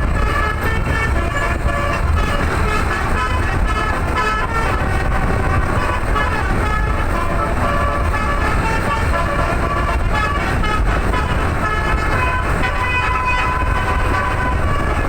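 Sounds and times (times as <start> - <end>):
bus musical air horn tune: 0.0 - 15.0
low engine and road rumble: 0.0 - 15.0.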